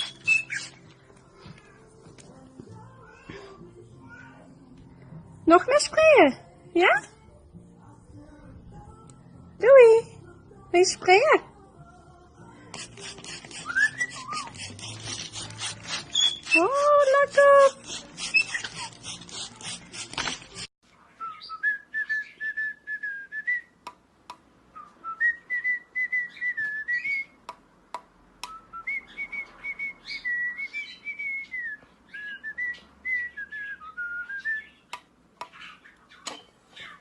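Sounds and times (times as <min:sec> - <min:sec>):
whistled tune: 0:00.0 - 0:00.8, 0:13.5 - 0:14.7, 0:16.1 - 0:17.0, 0:21.2 - 0:23.8, 0:24.7 - 0:27.4, 0:28.5 - 0:34.8.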